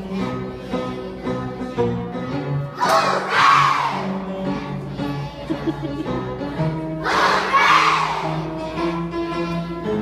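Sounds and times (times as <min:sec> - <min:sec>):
children shouting together: 0:02.8 - 0:04.1, 0:07.0 - 0:08.4.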